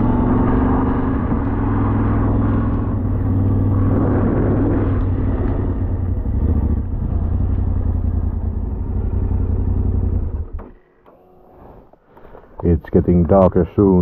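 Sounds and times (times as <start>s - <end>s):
motorcycle engine running: 0.0s - 11.0s.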